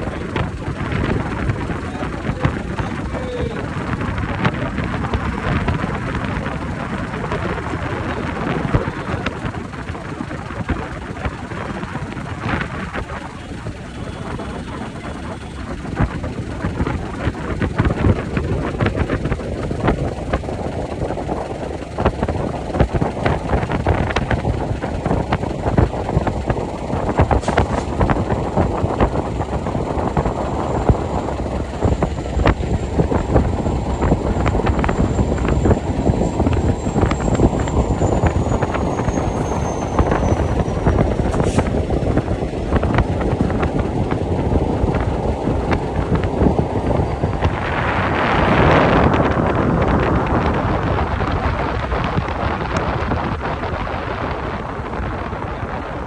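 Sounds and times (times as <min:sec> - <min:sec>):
train rumbling over bridge: 0:00.0 - 0:56.0
wheels clattering on rails: 0:00.0 - 0:56.0
faint high whine: 0:23.4 - 0:49.4.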